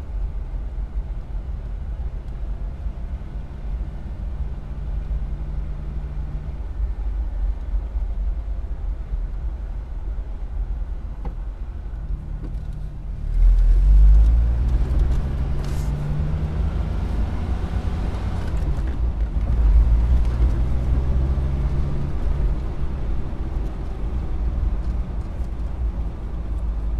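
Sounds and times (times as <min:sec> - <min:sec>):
car engine accelerating: 0:12.0 - 0:26.9.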